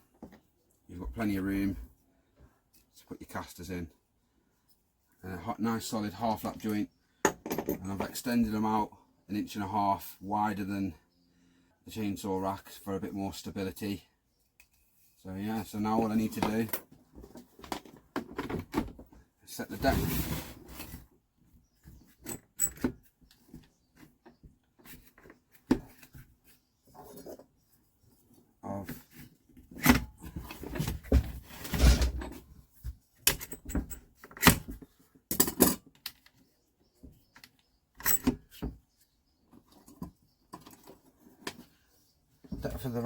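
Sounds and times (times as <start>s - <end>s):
metal tools clattering: 6.4s - 8.2s.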